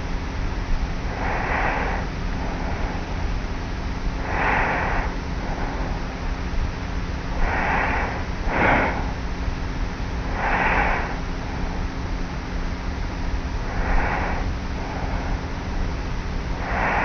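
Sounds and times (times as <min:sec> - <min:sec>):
low hum: 0:00.0 - 0:17.0
woman snoring softly: 0:07.4 - 0:09.2, 0:16.5 - 0:17.0.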